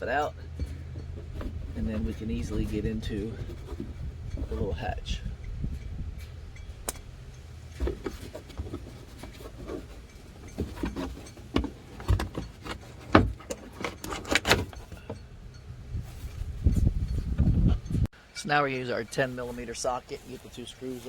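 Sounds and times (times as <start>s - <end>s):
steady low rumble: 0.0s - 8.6s
plastic and tools clicking and knocking: 7.7s - 15.2s.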